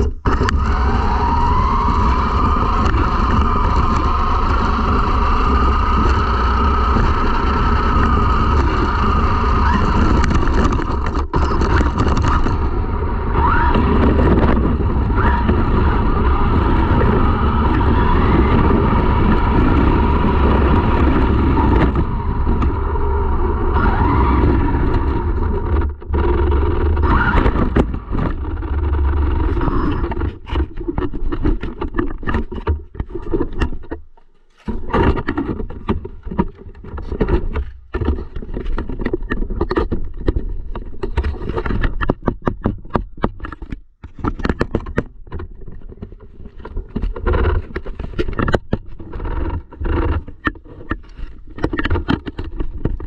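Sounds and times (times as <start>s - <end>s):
radio-controlled car motor: 0.0s - 32.5s.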